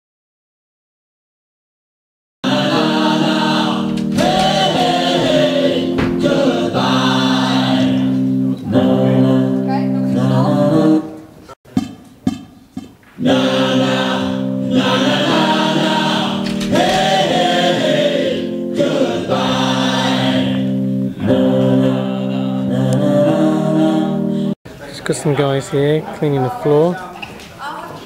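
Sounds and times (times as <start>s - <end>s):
men singing in chorus: 2.4s - 11.2s, 13.2s - 24.5s.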